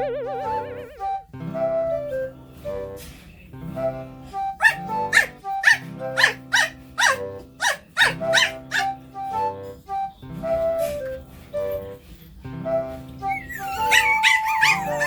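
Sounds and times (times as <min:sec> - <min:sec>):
background music: 0:00.0 - 0:15.0
puppy yipping: 0:04.4 - 0:09.0, 0:13.2 - 0:15.0.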